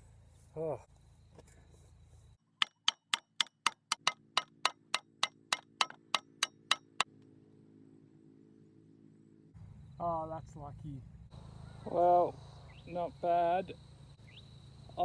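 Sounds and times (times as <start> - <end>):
rapid clock-like ticking: 2.6 - 7.1.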